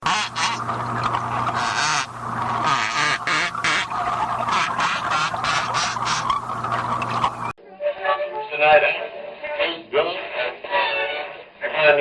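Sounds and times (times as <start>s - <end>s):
dolphin buzzing pulse bursts: 0.0s - 7.5s
steady low hum: 0.0s - 7.6s.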